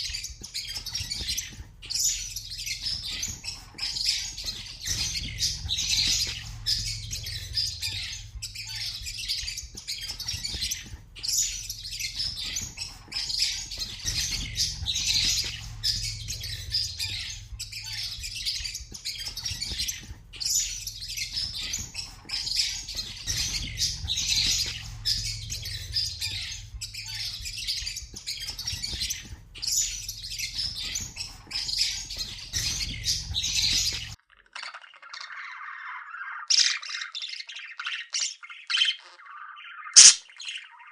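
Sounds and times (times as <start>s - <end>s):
small birds chirping: 0.0s - 40.9s
steady low hum: 0.1s - 34.2s.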